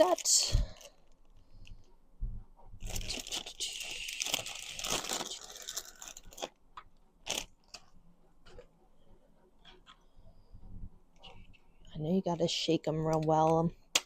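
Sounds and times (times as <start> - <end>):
packaging crinkling and rustling: 2.8 - 6.6, 7.2 - 7.9.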